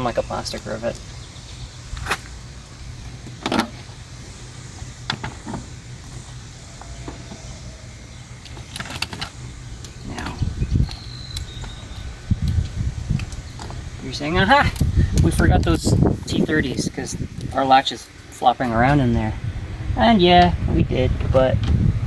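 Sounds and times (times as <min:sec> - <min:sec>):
steady low hum: 0:00.0 - 0:22.0
handling bumps: 0:02.0 - 0:07.7.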